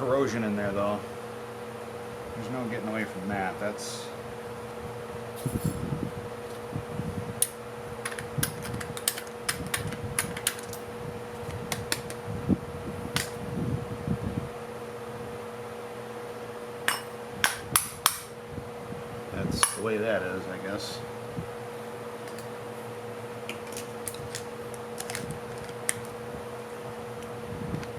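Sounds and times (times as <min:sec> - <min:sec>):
steady hum: 0:00.0 - 0:27.9.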